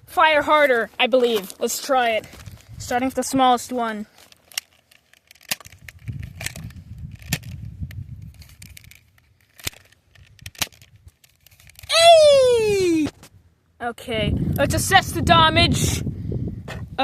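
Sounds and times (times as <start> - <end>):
wind rumble on microphone: 2.2 - 3.3, 5.7 - 8.9, 14.0 - 17.0.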